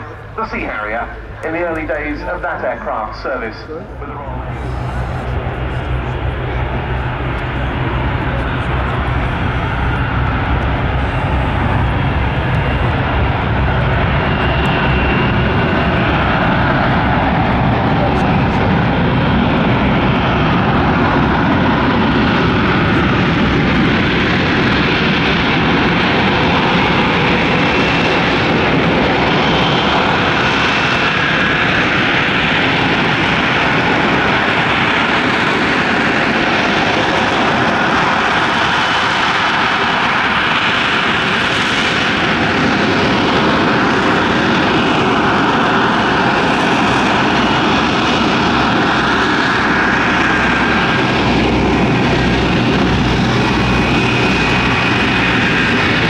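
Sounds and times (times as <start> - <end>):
jet engine roaring: 0.0 - 56.0.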